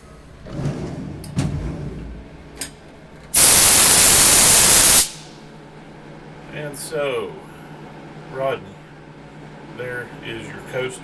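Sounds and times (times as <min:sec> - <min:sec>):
compressed air blow gun hissing: 0:03.4 - 0:05.3.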